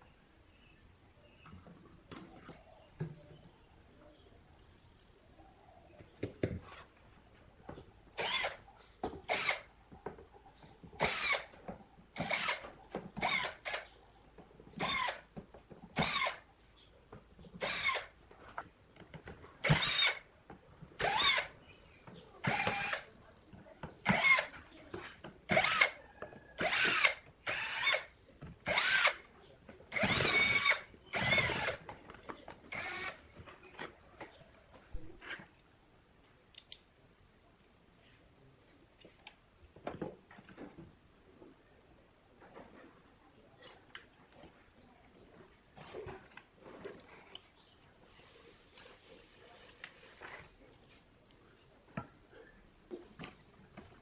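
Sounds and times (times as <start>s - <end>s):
power drill bursts: 8.2s - 8.6s, 9.3s - 9.7s, 11.0s - 11.5s, 12.2s - 13.8s, 14.8s - 15.2s, 16.0s - 16.4s, 17.6s - 18.1s, 19.6s - 20.2s, 21.0s - 21.5s, 22.4s - 23.1s, 24.0s - 24.6s, 25.5s - 26.0s, 26.6s - 29.2s, 29.9s - 31.8s, 32.7s - 33.2s.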